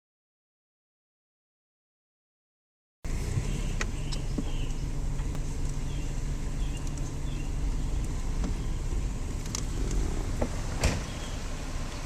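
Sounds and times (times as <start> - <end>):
low outdoor rumble: 3.1 - 12.0.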